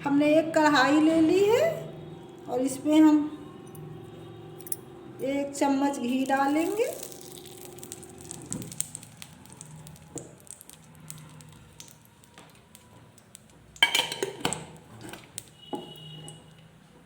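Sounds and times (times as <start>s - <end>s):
spoon clinking against dishes: 13.8s - 15.2s.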